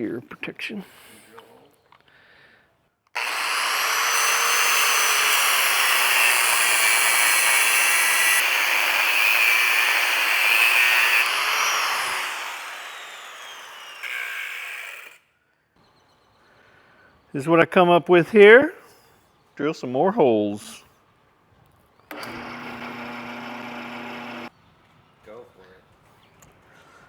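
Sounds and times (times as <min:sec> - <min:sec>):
cutoff wheel grinding steel: 0:03.2 - 0:15.2, 0:22.1 - 0:24.5.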